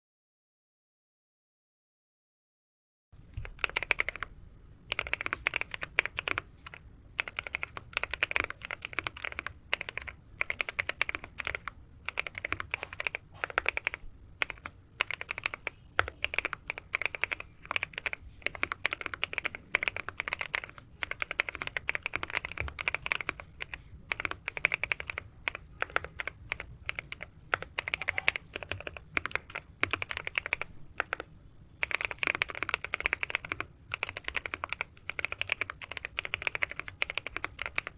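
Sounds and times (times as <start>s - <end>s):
typing on mechanical keyboard: 3.4s - 4.3s, 4.9s - 37.9s.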